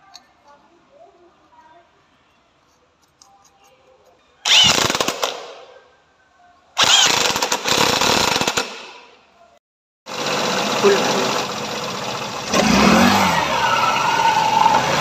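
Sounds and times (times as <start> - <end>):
power tool bursts: 6.8 - 7.8.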